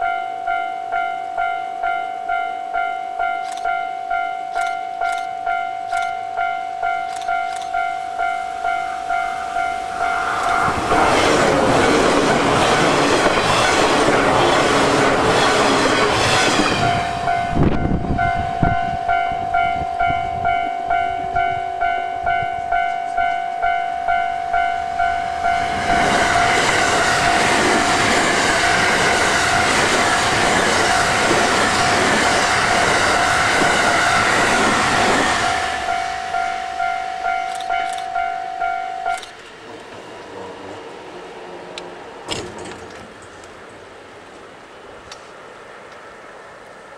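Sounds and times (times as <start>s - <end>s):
level crossing warning bell: 0.0s - 10.9s, 15.3s - 29.7s, 32.5s - 39.7s
train rushing past: 4.6s - 46.9s.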